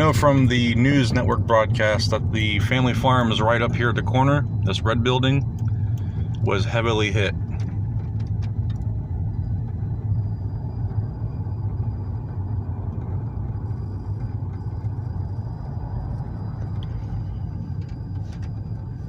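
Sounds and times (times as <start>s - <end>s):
car engine and tyre rumble: 0.0s - 19.0s
faint high whine: 0.0s - 19.0s.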